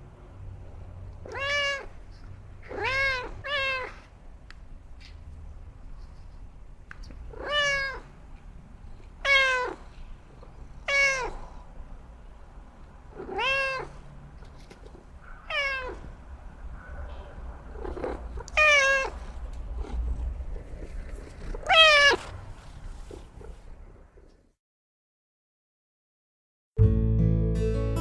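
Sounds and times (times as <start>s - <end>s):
cat meowing: 1.2s - 2.0s, 2.6s - 4.1s, 7.2s - 8.2s, 9.2s - 11.6s, 13.1s - 14.1s, 15.2s - 16.2s, 17.7s - 20.0s, 21.2s - 22.3s.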